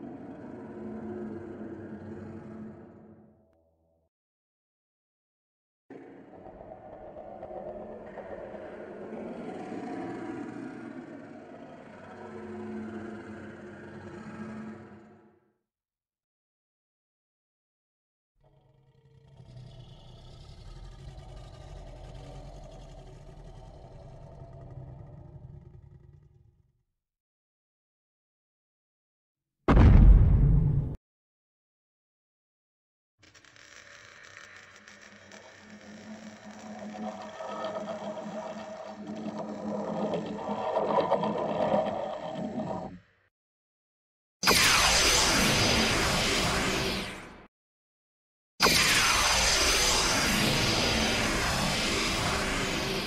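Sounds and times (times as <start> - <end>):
deep layered monster rumble: 0.1 - 3.2, 6.4 - 15.2, 19.2 - 26.6, 29.7 - 31.0.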